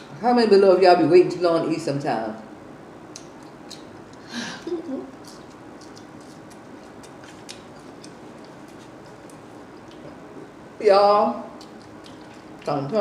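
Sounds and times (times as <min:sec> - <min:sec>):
lip smacks and mouth clicks: 0:03.1 - 0:04.0, 0:05.1 - 0:10.2, 0:11.6 - 0:12.7.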